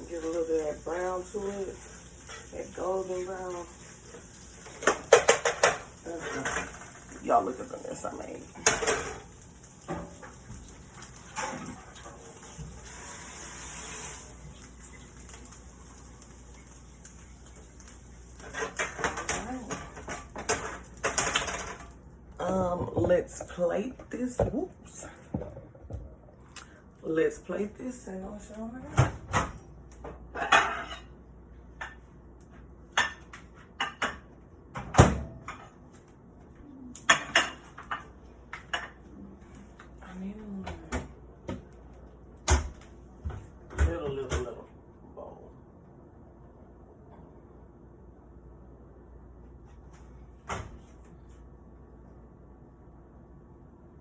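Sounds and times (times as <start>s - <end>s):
food sizzling in a pan: 0.0s - 22.0s.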